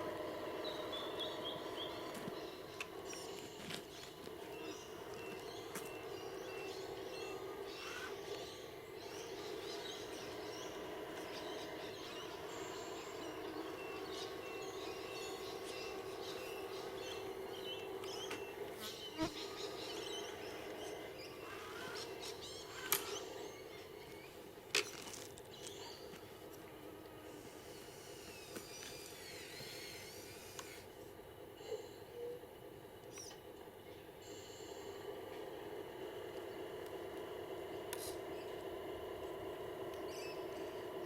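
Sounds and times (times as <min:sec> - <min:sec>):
electric motor whining: 0:00.0 - 0:24.4, 0:25.2 - 0:31.0.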